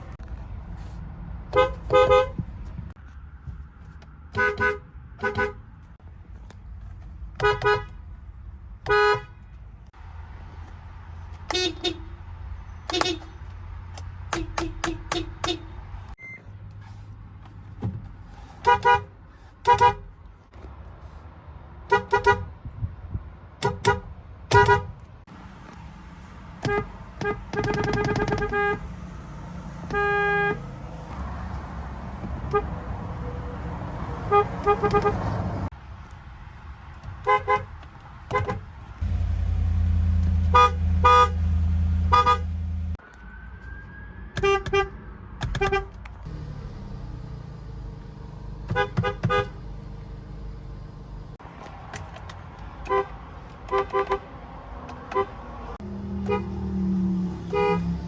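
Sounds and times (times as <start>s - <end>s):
car horns honking: 1.5s - 2.6s, 4.3s - 5.7s, 7.4s - 8.0s, 8.8s - 9.5s, 11.4s - 13.4s, 14.3s - 16.5s, 18.6s - 20.1s, 21.9s - 22.5s, 23.6s - 25.1s, 26.6s - 29.1s, 29.7s - 30.8s, 32.4s - 32.9s, 34.0s - 35.6s, 37.2s - 43.0s, 44.3s - 50.8s, 52.8s - 54.3s, 54.9s - 56.8s, 57.4s - 58.0s.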